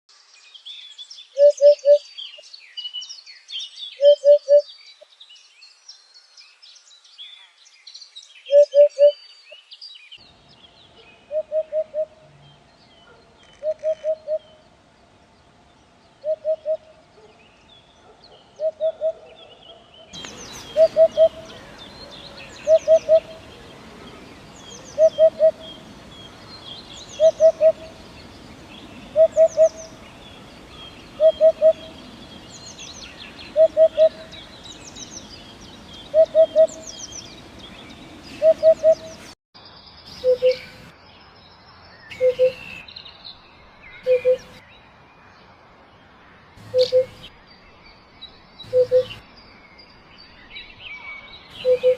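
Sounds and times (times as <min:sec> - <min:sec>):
bird chirping: 0:00.2 - 0:45.5, 0:46.6 - 0:51.9
bird hooting call: 0:01.4 - 0:02.0, 0:04.0 - 0:04.7, 0:08.5 - 0:09.2, 0:11.3 - 0:12.2, 0:13.5 - 0:14.6, 0:16.2 - 0:16.9, 0:18.6 - 0:19.3, 0:20.2 - 0:26.1, 0:26.9 - 0:30.0, 0:30.6 - 0:32.5, 0:33.3 - 0:35.2, 0:36.1 - 0:37.6, 0:38.3 - 0:39.2, 0:40.2 - 0:40.8, 0:42.1 - 0:42.7, 0:44.1 - 0:44.5, 0:46.7 - 0:47.3, 0:48.7 - 0:49.2, 0:51.6 - 0:51.9.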